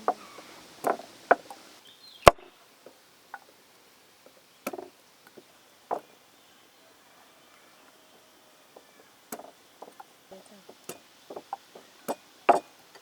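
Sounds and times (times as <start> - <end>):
sharp knocks and taps: 0.8 - 1.6, 4.6 - 6.1, 8.8 - 10.1, 10.7 - 13.0.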